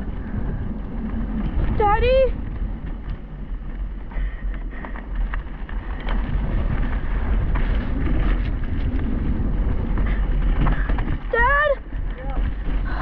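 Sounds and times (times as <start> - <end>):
low rumble: 0.0 - 13.0
wind rushing over camera: 0.0 - 13.0
bike clicks and knocks: 9.9 - 13.0.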